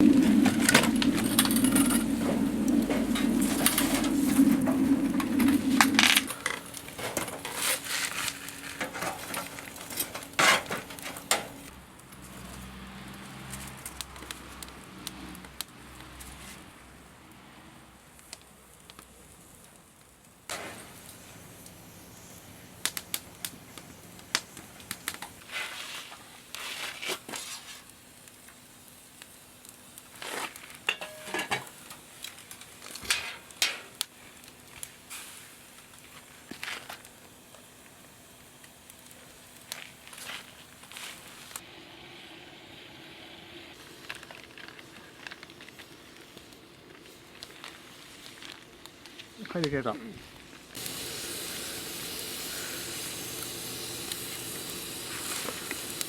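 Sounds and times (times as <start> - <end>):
crackles: 0.0 - 12.7, 13.5 - 41.8, 43.6 - 56.0
metal utensils clinking on pots: 30.9 - 31.8.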